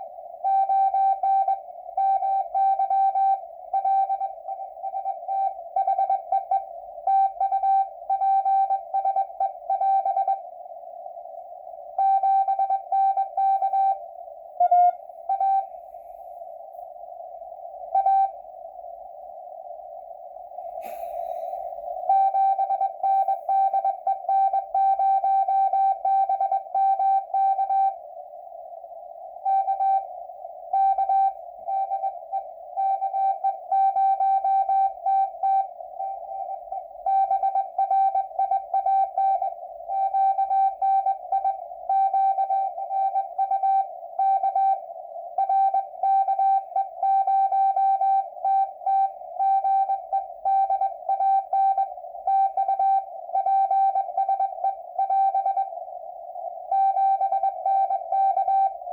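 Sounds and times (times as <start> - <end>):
morse code tone: 12.0 - 14.0, 14.6 - 15.8, 22.1 - 28.0, 30.8 - 55.8, 56.7 - 58.9.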